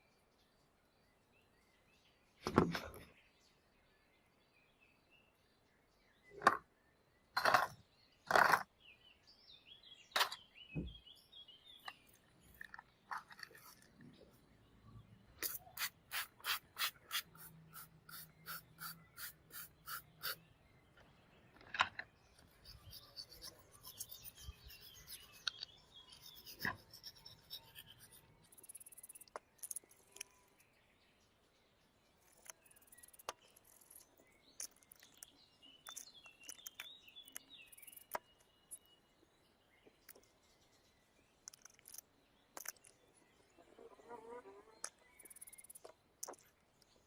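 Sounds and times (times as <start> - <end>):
small parts and tools clicking: 21.6 - 30.6, 32.2 - 38.9, 41.4 - 43.0, 44.9 - 46.9
soft scratching: 22.4 - 29.9.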